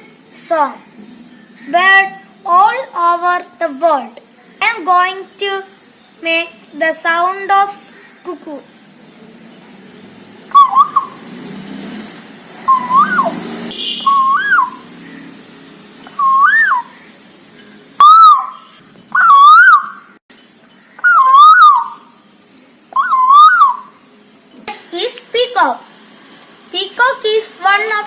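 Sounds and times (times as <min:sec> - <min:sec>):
child imitating cuckoo call: 0:12.7 - 0:13.3, 0:14.1 - 0:14.8, 0:16.2 - 0:16.9, 0:18.0 - 0:18.6, 0:19.2 - 0:20.0, 0:21.0 - 0:22.1, 0:23.0 - 0:24.0.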